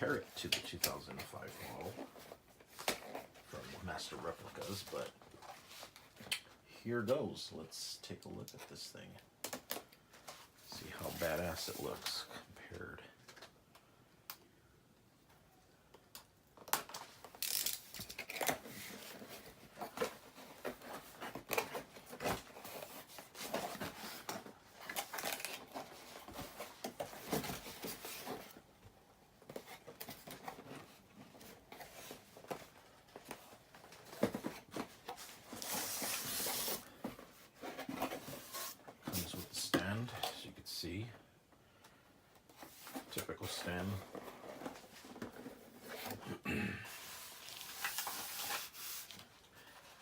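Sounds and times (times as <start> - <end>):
packaging tearing and rustling: 16.7 - 28.5, 33.4 - 37.0, 47.0 - 49.2.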